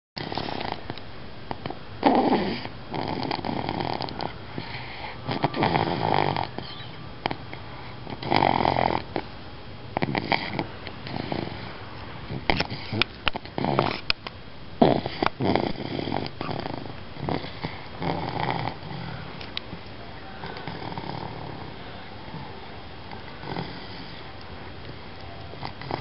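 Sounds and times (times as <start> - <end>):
baby snoring: 2.0 - 7.4, 8.0 - 9.2, 10.0 - 11.7, 12.3 - 14.0, 14.8 - 19.2, 20.4 - 22.5, 23.4 - 24.2.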